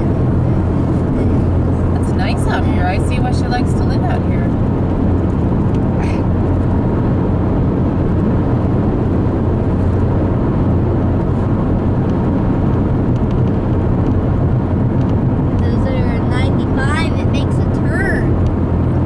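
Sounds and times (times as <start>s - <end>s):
car interior road noise: 0.0s - 19.0s.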